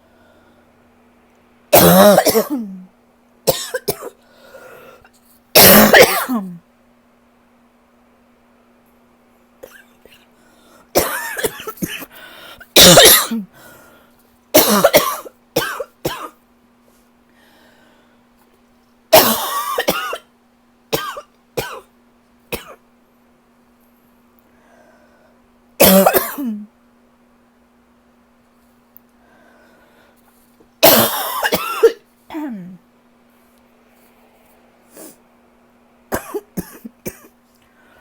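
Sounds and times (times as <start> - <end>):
person coughing: 1.7 - 2.9, 3.5 - 5.0, 5.6 - 6.6, 9.6 - 10.2, 11.0 - 13.6, 14.6 - 16.4, 19.1 - 20.3, 21.0 - 21.9, 22.6 - 22.8, 25.8 - 26.7, 30.8 - 32.8, 36.1 - 37.4.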